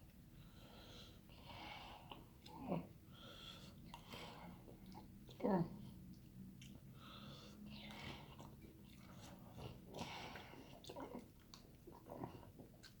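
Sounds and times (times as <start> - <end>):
person chewing food: 7.8 - 13.0.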